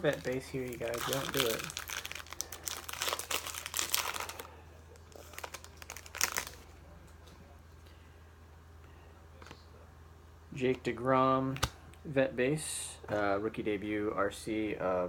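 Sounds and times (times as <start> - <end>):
plastic wrapper crinkling: 0.0 - 6.7.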